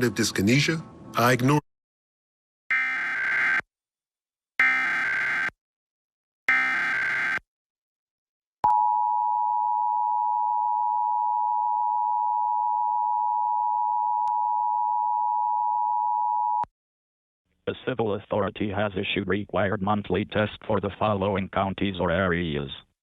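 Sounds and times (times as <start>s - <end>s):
digital data bursts buzzing: 4.6s - 5.5s, 6.5s - 7.4s.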